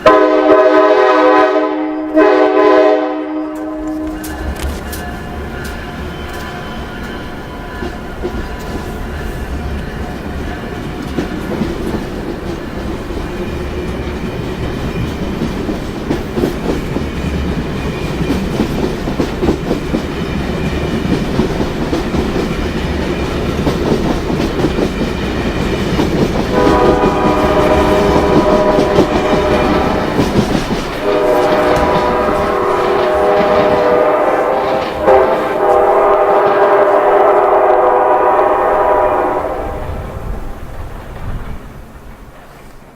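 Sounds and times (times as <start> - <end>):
train air horn: 0.0 - 5.4, 26.5 - 40.6
train wheels rumbling on rails: 0.0 - 42.9.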